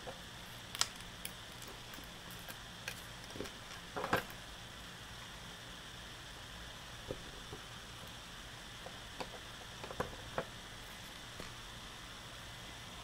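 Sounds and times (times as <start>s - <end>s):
faint steady hum: 0.0s - 13.0s
wires clicking into breadboard: 0.7s - 4.3s.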